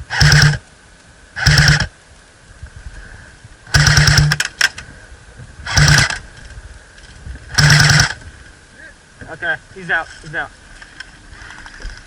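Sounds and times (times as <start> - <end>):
airsoft gun full-auto bursts: 0.1 - 0.6, 1.4 - 1.9, 3.7 - 4.7, 5.7 - 6.2, 7.5 - 8.2
sharp clicks: 3.7 - 4.8.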